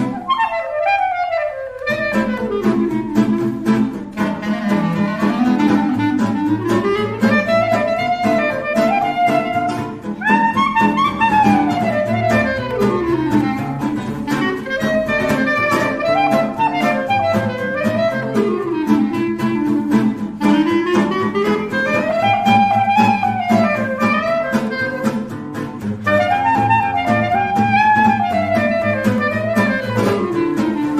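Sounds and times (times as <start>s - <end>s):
instrumental background music: 0.0s - 30.9s.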